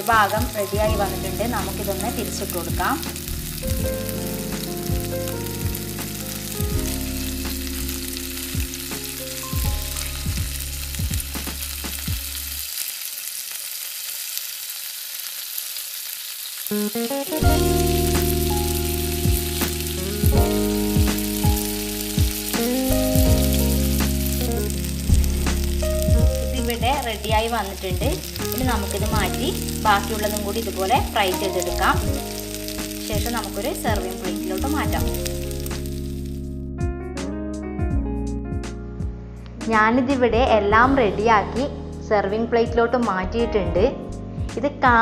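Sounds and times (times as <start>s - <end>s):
background music with low notes: 0.0s - 12.6s, 16.7s - 45.0s
skewers sizzling in oil: 0.0s - 36.4s.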